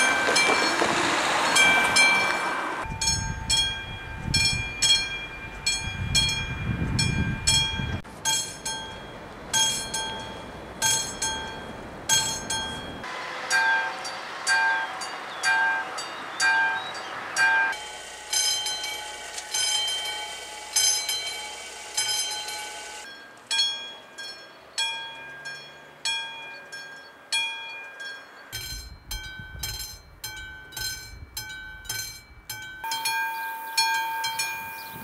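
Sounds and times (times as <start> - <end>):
level crossing bells ringing: 0.0 - 0.8, 1.5 - 35.0
passing train rumble: 0.0 - 31.9.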